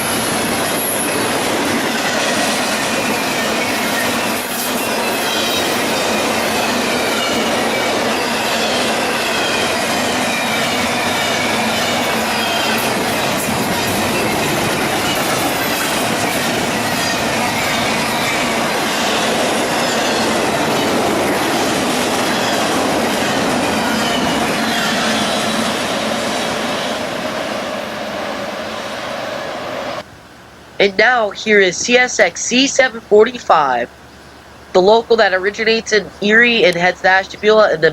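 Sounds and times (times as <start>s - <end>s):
train wheel squeal: 0.0s - 30.0s
freight train cars rolling: 0.0s - 37.9s.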